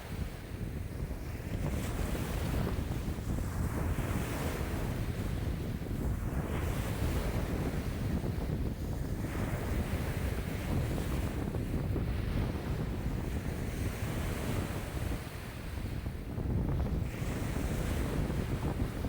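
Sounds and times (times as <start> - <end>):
waves breaking on shore: 0.0 - 19.0
wind buffeting microphone: 0.0 - 19.0.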